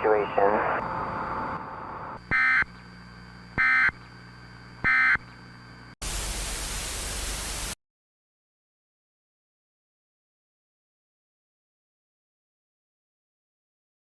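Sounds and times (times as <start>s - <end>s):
loud burst of static: 6.0s - 7.8s.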